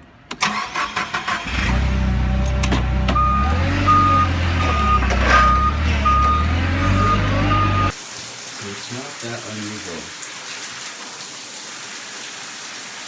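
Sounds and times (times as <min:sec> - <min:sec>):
heavy vehicle engine running: 0:01.5 - 0:07.9
reversing alarm beeping: 0:03.2 - 0:07.9.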